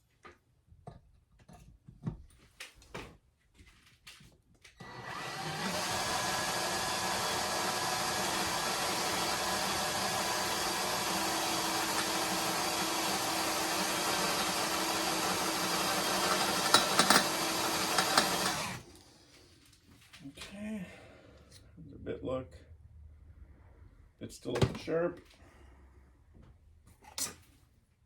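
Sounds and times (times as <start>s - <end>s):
electric drill boring into metal: 4.8s - 18.9s.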